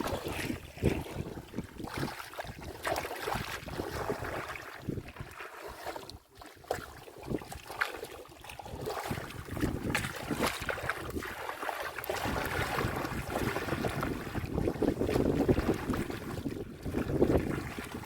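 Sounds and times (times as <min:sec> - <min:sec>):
wind buffeting microphone: 0:00.0 - 0:05.4, 0:08.6 - 0:11.4, 0:12.0 - 0:18.0
muddy water sloshing and splashing: 0:00.0 - 0:18.0.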